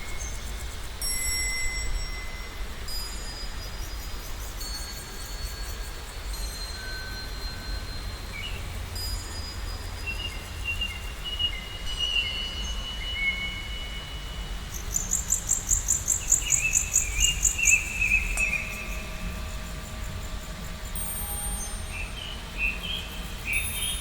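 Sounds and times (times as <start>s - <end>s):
bird-like whistled notes: 15.0s - 19.8s
low steady rumble: 15.5s - 23.6s.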